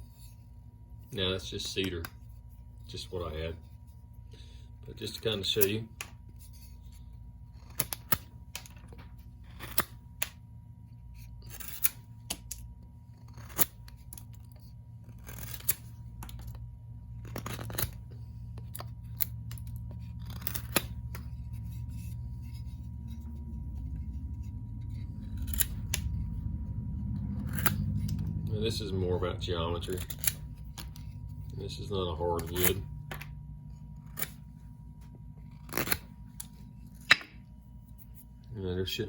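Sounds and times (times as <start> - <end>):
steady low hum: 0.0 - 39.0
knife cutting wood: 11.2 - 16.5, 17.2 - 26.3, 29.9 - 31.3, 35.5 - 37.4.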